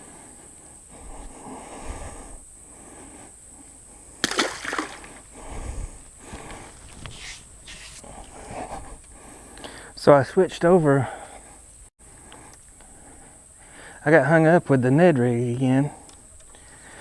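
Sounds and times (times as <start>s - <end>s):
water splashing: 4.2s - 5.2s.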